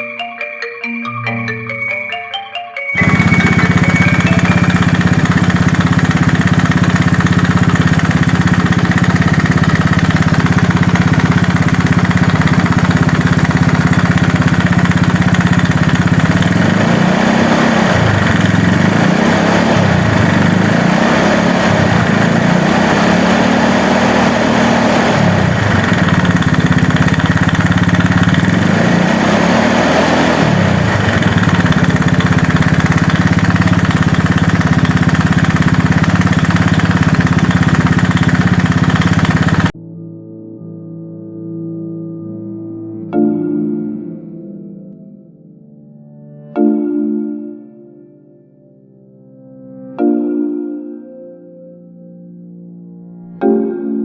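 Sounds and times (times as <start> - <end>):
scooter engine idling and revving: 3.0 - 39.8.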